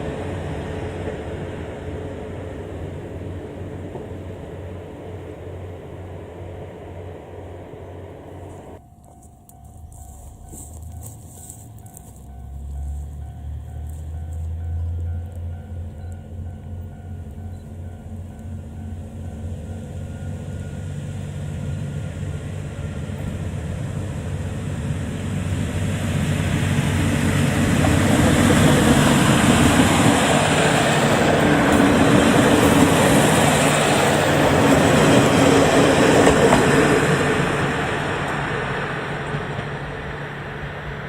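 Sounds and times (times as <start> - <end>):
diesel railcar engine and wheels: 0.0 - 41.0
level crossing warning bell: 8.8 - 22.8.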